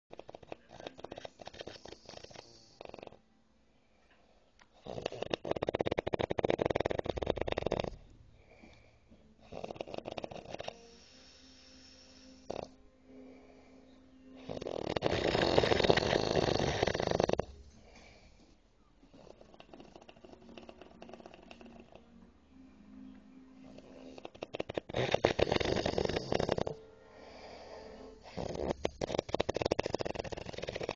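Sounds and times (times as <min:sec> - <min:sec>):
wheezing breath with whistle: 0:00.6 - 0:03.0, 0:08.4 - 0:17.3, 0:23.6 - 0:30.9
man snoring: 0:04.8 - 0:08.0, 0:09.4 - 0:12.8, 0:14.4 - 0:17.5, 0:23.6 - 0:30.9.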